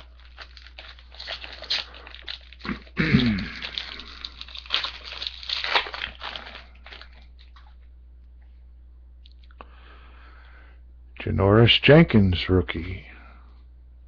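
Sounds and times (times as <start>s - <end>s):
card wrappers crinkling and tearing: 0.0s - 7.8s.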